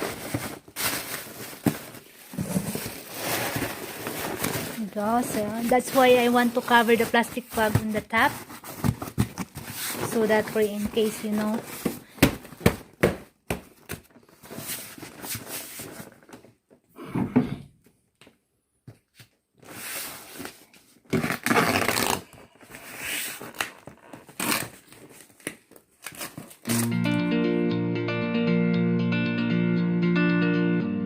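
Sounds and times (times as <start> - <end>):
plastic bag rustling: 0.0 - 12.8.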